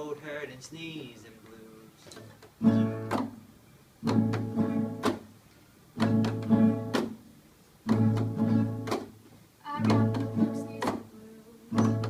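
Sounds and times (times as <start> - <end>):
guitar strumming blues chords: 2.5 - 12.0.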